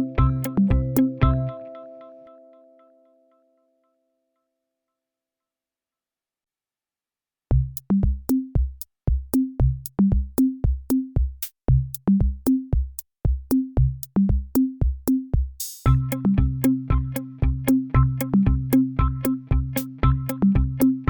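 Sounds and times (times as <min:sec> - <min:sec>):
electronic music with kick drum: 0:00.0 - 0:01.7, 0:07.5 - 0:21.0.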